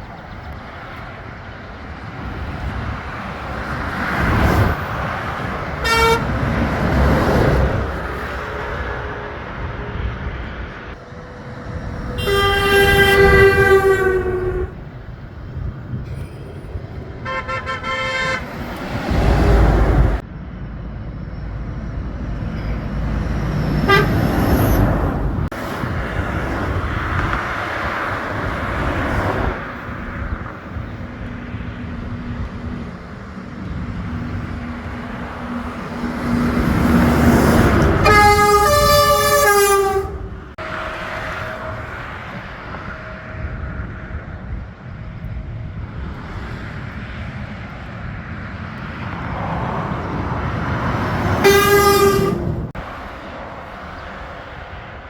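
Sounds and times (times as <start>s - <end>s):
low rumble of passing truck: 0.0s - 55.0s
truck engine and tyre noise: 0.0s - 55.0s
truck air horn blasts: 5.8s - 6.6s, 11.9s - 14.9s, 17.2s - 18.7s, 23.8s - 24.8s, 37.3s - 43.0s, 51.3s - 52.7s.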